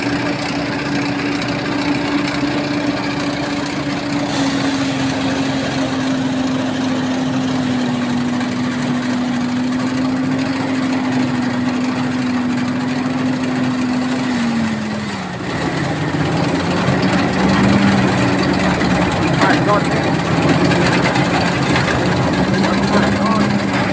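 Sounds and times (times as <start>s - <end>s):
rice thresher engine running: 0.0s - 23.9s.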